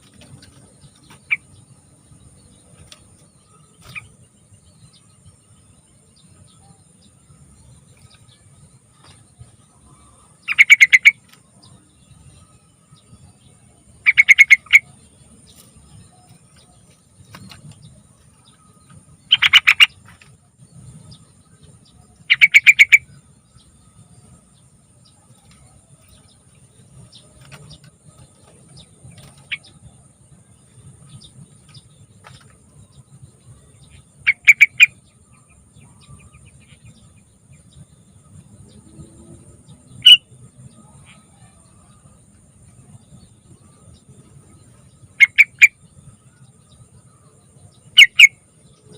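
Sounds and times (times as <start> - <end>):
faint low rumble: 11.2 - 48.9.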